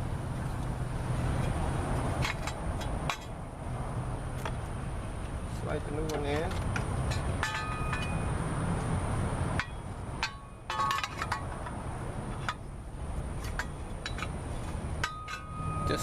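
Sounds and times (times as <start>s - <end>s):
metal tools clinking: 6.0s - 8.3s, 9.6s - 11.8s, 13.4s - 16.0s.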